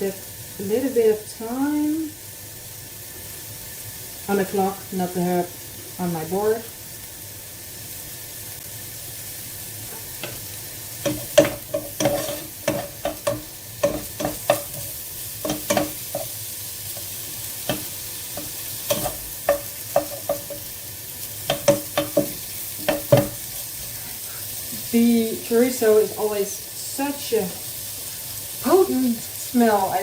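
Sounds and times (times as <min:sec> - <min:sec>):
food sizzling in a frying pan: 0:00.0 - 0:30.0
utensil clinking against pan: 0:11.0 - 0:16.3, 0:17.7 - 0:20.7, 0:21.5 - 0:23.4.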